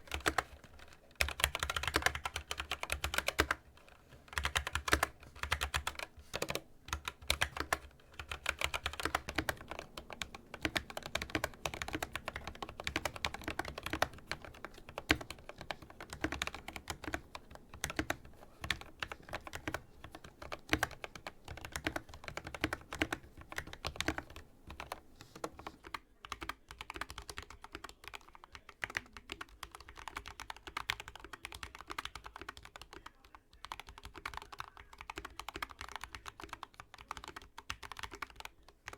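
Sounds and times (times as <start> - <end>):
fast typing on mechanical keyboard: 0.0 - 38.9.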